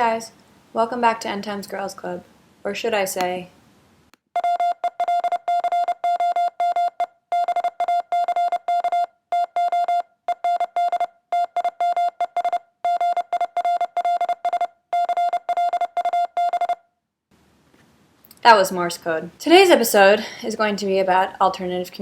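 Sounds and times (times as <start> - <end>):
morse code beeps: 4.4 - 16.8.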